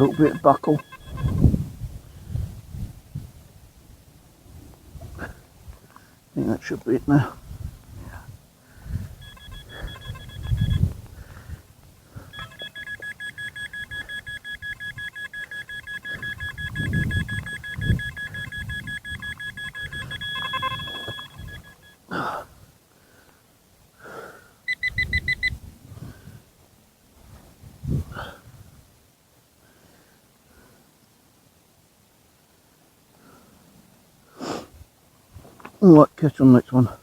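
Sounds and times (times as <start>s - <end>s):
metal detector two-pitch beeping: 0.0s - 1.6s, 9.2s - 11.0s, 12.2s - 22.0s, 24.7s - 25.6s.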